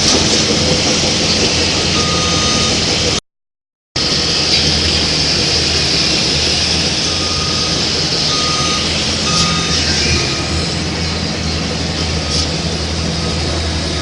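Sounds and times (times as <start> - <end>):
reversing beeper beeps: 2.0 - 2.9, 7.1 - 11.4, 12.2 - 14.0
motor and gear whine: 4.0 - 14.0.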